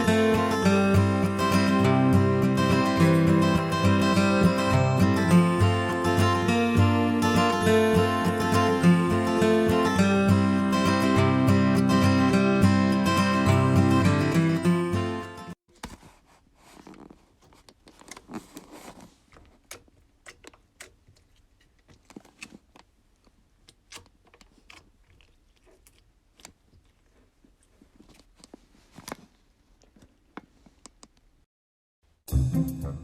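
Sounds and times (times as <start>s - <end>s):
slime squelching: 15.8s - 31.2s.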